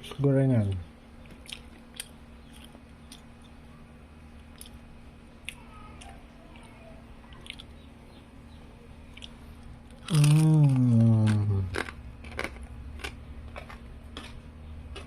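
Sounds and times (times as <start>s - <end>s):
steady low hum: 0.0s - 15.0s
person chewing crispy food: 0.7s - 3.6s, 4.4s - 4.8s, 5.4s - 7.8s, 9.1s - 15.0s.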